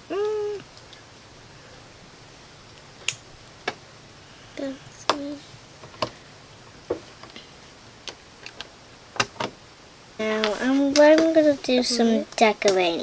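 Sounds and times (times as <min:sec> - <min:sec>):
low voice sounds: 0:00.0 - 0:00.7.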